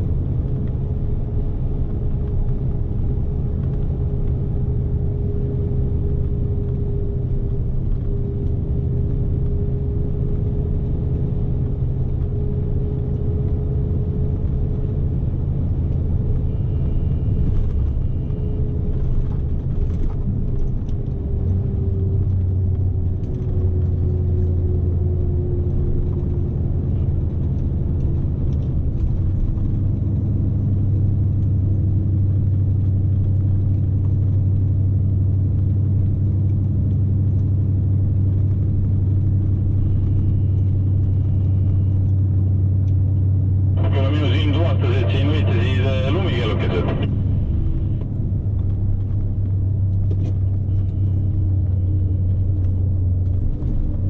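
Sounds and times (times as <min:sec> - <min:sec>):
truck diesel engine rumbling: 0:39.9 - 0:48.6.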